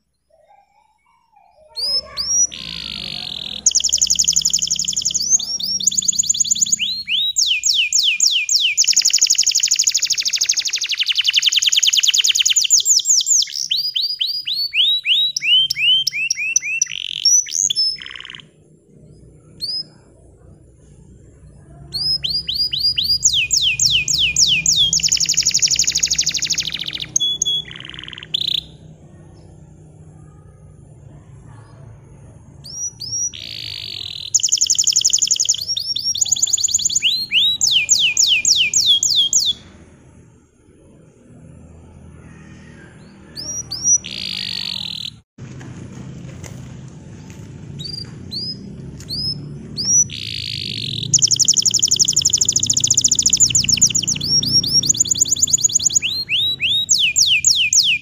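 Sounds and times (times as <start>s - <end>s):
canary singing trills: 0.0s - 45.3s, 47.7s - 58.0s.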